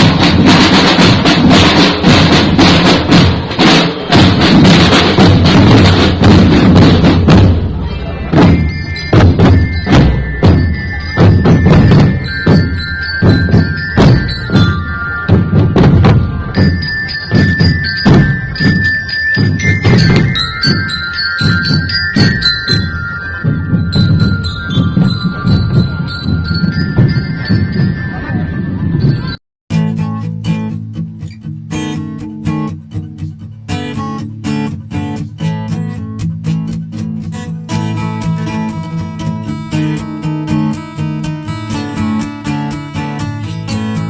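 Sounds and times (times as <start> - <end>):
steady drum beat: 0.0 - 28.0, 29.2 - 44.0
bell-like mallet percussion melody: 8.3 - 30.9, 33.9 - 44.0.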